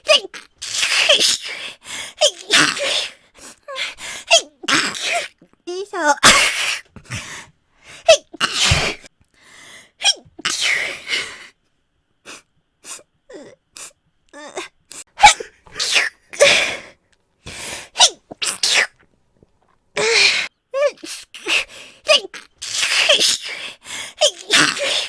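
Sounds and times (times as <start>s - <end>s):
woman sneezing: 0.0s - 1.6s, 2.2s - 3.2s, 6.2s - 6.8s, 8.1s - 9.1s, 15.2s - 16.8s, 20.0s - 25.0s.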